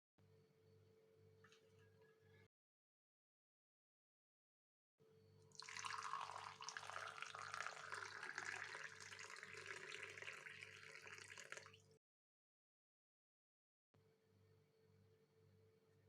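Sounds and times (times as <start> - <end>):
water pouring: 5.5 - 12.0.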